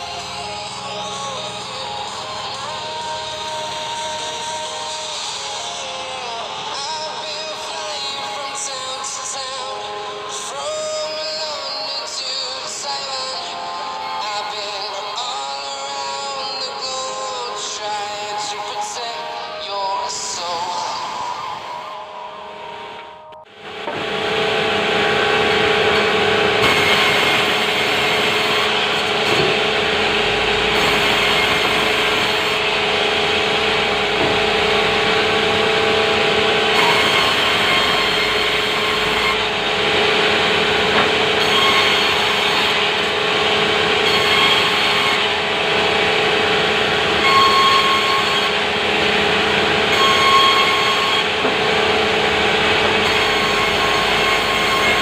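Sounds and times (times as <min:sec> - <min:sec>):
sawmill saw cutting timber: 0:00.0 - 0:21.5, 0:23.6 - 0:55.0.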